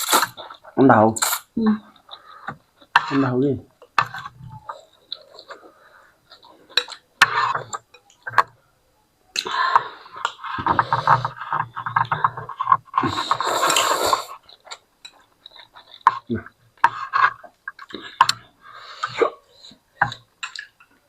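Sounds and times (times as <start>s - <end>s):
slurping and chewing noodles: 0.0s - 3.1s, 9.4s - 20.7s.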